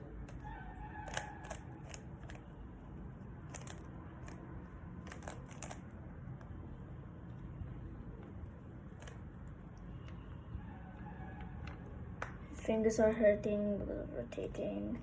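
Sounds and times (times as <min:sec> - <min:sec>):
puzzle cube clicking: 0:00.2 - 0:02.5, 0:03.5 - 0:04.4, 0:05.0 - 0:06.5.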